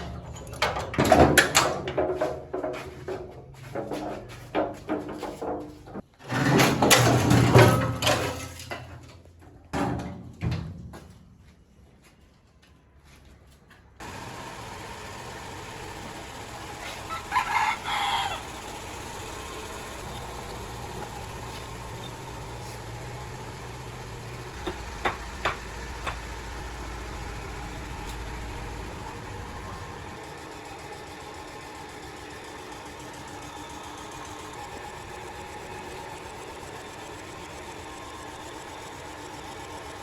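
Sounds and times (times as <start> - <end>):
rooster crowing: 16.2 - 21.2.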